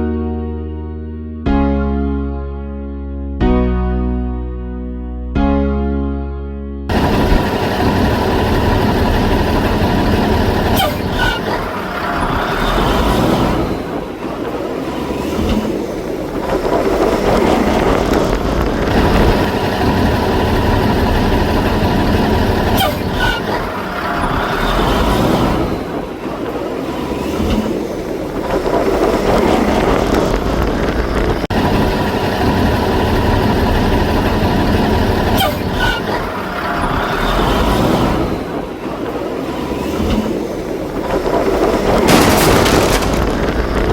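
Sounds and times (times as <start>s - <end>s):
heavy vehicle engine running: 6.9s - 43.9s.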